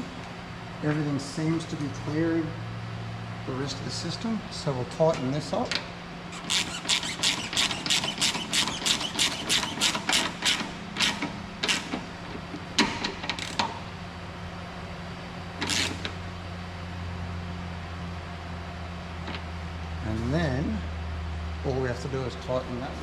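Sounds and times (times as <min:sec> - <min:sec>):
hand ratchet clicking: 0:06.3 - 0:12.0, 0:15.6 - 0:16.1.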